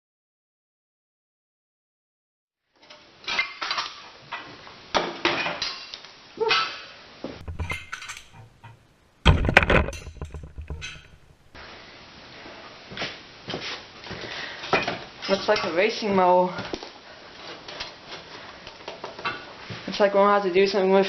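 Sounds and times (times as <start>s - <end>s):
metal tools clinking: 7.4s - 8.8s, 9.4s - 11.5s
heavy clunk: 7.4s - 11.6s.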